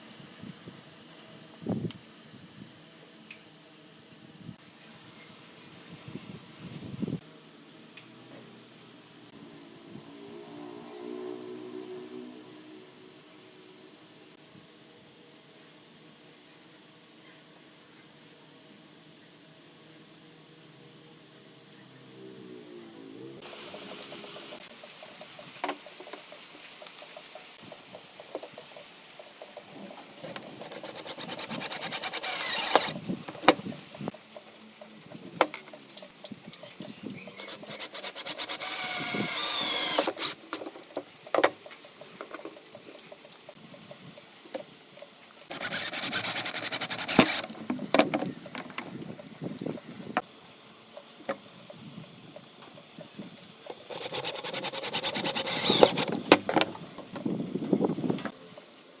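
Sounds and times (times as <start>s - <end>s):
power tool working wood: 30.6s - 33.0s, 37.4s - 40.4s, 45.5s - 47.5s, 53.9s - 56.6s.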